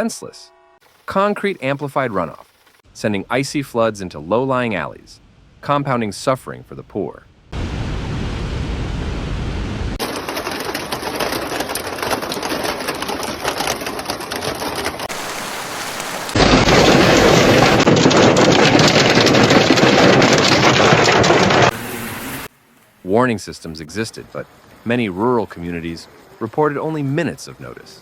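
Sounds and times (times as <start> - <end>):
hailstones hitting hard surfaces: 10.0 - 21.8.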